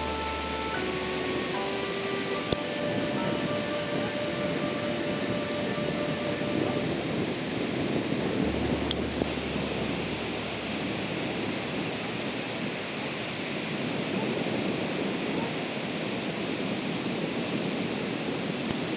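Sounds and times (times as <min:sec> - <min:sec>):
low hum: 0:00.0 - 0:14.2
wind noise on microphone: 0:00.0 - 0:18.9.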